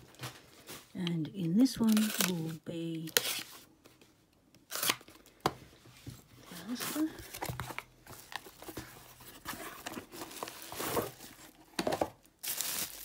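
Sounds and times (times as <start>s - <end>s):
packaging torn and crinkled: 1.7s - 3.5s, 4.7s - 5.2s, 12.4s - 13.0s.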